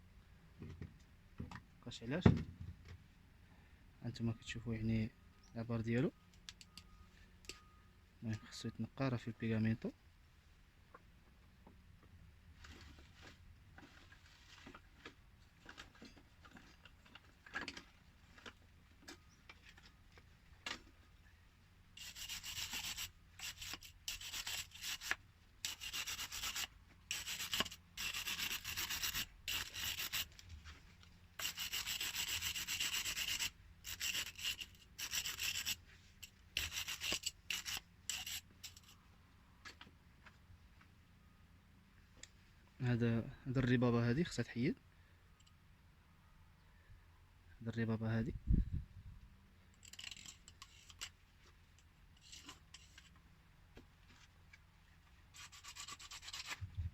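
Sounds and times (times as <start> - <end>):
hand scraping a plumbing fitting: 31.4 - 38.9.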